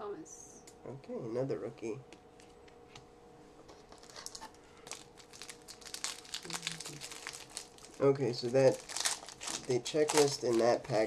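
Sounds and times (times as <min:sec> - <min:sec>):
foil wrapper crinkling: 0:03.8 - 0:11.0.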